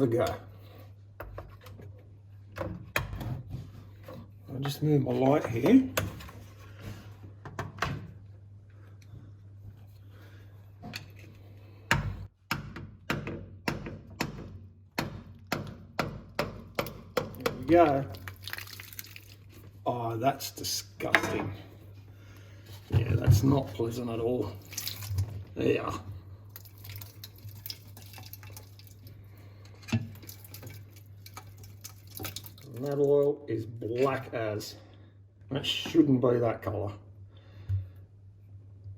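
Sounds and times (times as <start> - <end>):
oil draining and dripping: 16.8 - 19.8, 22.2 - 33.3.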